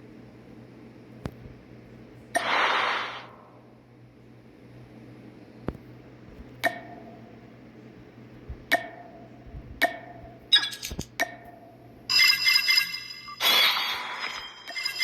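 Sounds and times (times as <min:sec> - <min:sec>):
steady low hum: 0:00.0 - 0:12.2
busy chiming effect: 0:12.1 - 0:15.0.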